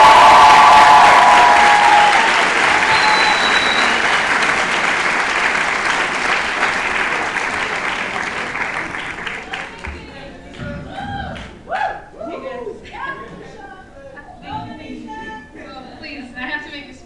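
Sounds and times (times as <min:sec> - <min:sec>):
people cheering: 0:00.0 - 0:09.0
audience applauding: 0:00.0 - 0:09.8.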